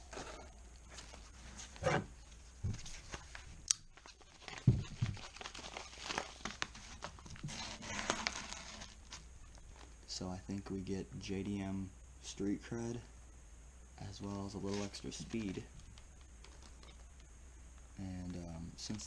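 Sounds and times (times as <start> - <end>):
rustling and crinkling: 0.0 - 10.1, 14.5 - 19.0.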